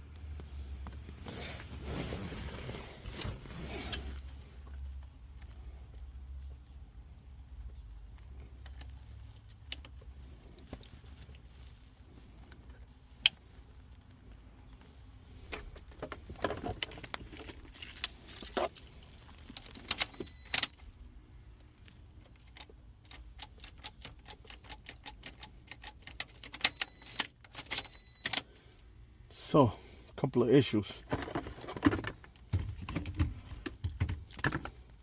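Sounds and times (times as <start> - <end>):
short high beeps: 20.1 - 20.7, 26.7 - 28.3.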